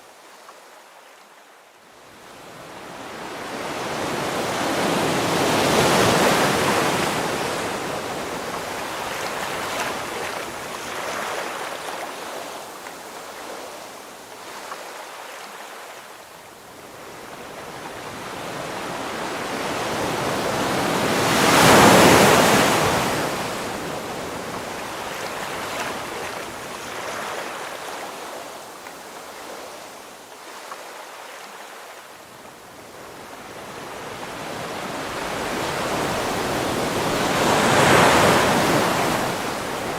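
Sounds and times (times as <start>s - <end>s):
ocean waves crashing: 3.0s - 12.6s, 17.6s - 28.6s, 33.1s - 39.9s.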